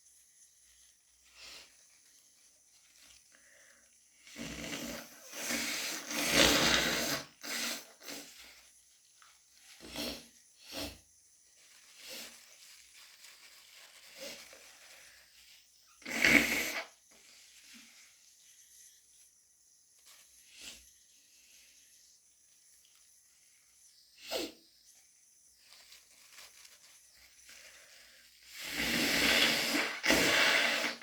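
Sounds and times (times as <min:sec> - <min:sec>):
person blowing congested nose: 0:04.3 - 0:08.4, 0:16.0 - 0:17.0, 0:28.5 - 0:31.0
person sniffling: 0:28.6 - 0:31.0.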